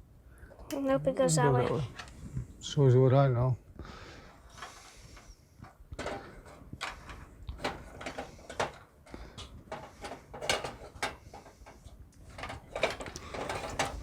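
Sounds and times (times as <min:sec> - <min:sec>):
hard drive parts clicking and knocking: 0:04.5 - 0:14.0.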